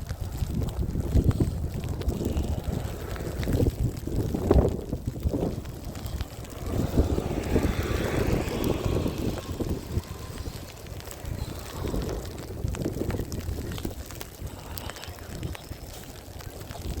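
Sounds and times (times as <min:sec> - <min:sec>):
wind buffeting microphone: 0:00.0 - 0:17.0
vehicle passing by: 0:05.2 - 0:12.8.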